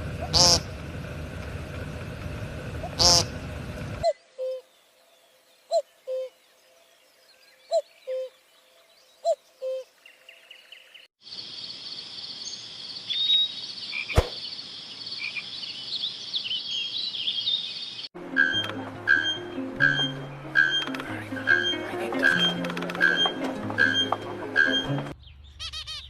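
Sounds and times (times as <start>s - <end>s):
sharp click: 20.6s - 21.1s
animal chirping calls: 25.6s - 26.0s.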